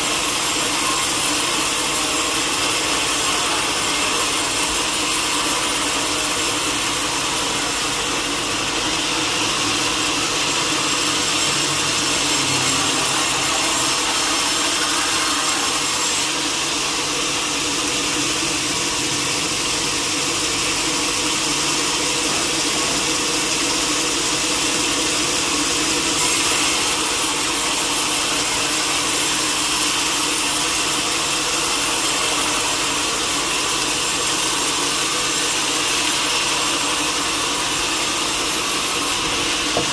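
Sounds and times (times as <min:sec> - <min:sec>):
power saw cutting wood: 0:00.0 - 0:39.9.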